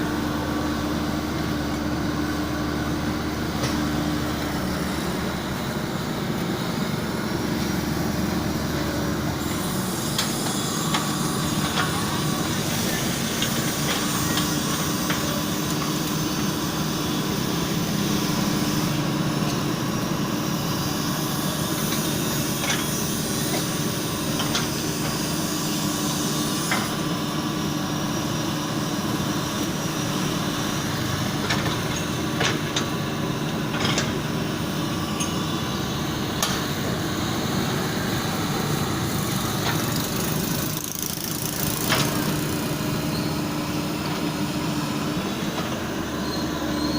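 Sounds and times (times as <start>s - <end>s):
excavator diesel engine running: 0.0s - 46.9s.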